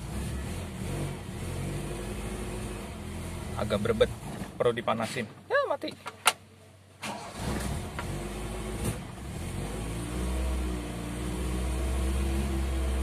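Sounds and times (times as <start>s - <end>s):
car engine fast idle: 7.0s - 7.8s.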